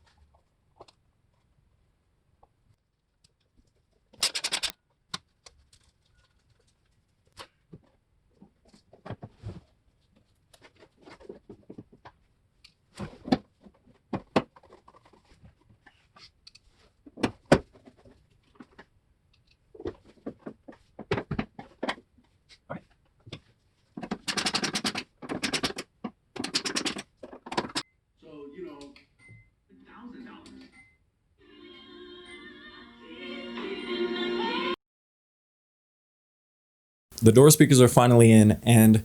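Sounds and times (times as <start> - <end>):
clicks and knocks of handwork: 24.0 - 27.8.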